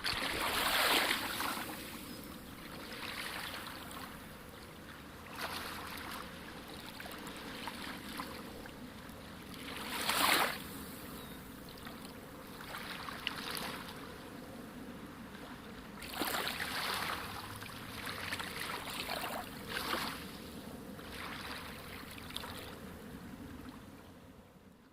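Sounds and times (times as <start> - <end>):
sea water washing: 0.0 - 11.1, 15.2 - 23.8
waves surging: 0.0 - 24.0.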